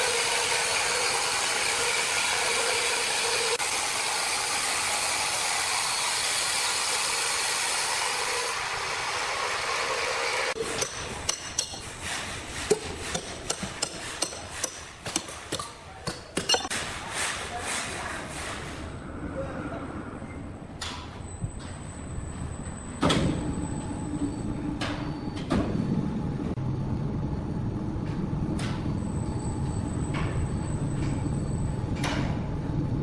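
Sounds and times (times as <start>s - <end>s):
power saw cutting wood: 0.0s - 10.9s.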